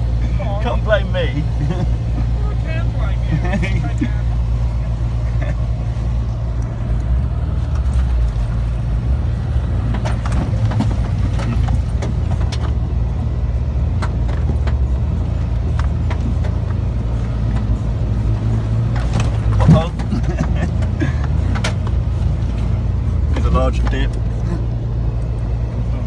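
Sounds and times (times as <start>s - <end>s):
engine running: 0.0s - 26.0s
knocks and rattles: 9.7s - 24.2s.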